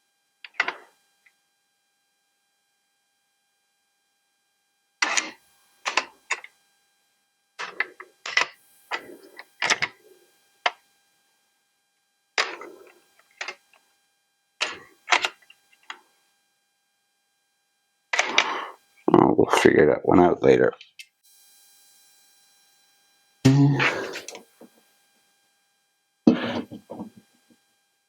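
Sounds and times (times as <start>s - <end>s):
plastic parts clicking and clattering: 0.5s - 0.9s, 5.0s - 6.5s, 7.6s - 10.0s, 12.4s - 12.7s, 13.4s - 13.6s, 14.6s - 16.0s, 18.2s - 18.5s.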